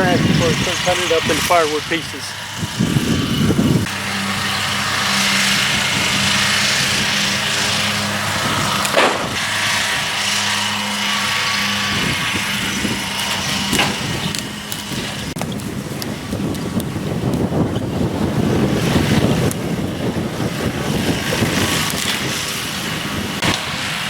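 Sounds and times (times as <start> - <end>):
vehicle engine running: 0.0 - 24.0
sharp knocks: 8.9 - 9.4.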